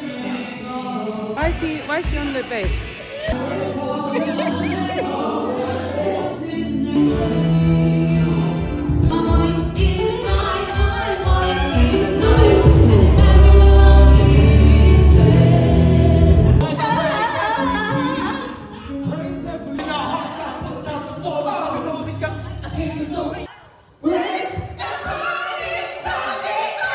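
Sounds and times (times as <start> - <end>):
gospel choir singing: 0.0 - 26.9
band playing: 7.0 - 16.7
heavy bass: 11.8 - 16.6.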